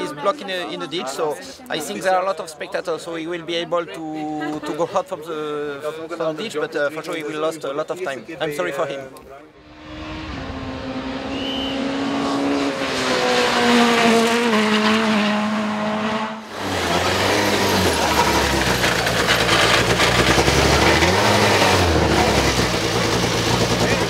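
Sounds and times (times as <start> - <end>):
rally car engine at speed: 9.6 - 24.0
tyre and road noise: 9.6 - 24.0.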